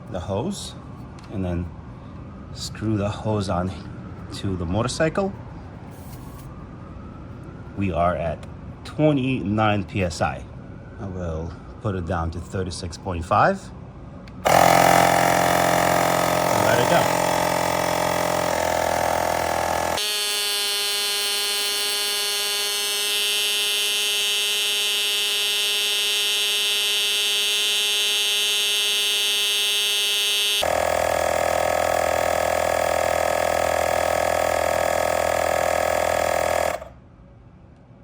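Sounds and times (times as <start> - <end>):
portable air compressor buzzing: 14.4 - 37.0.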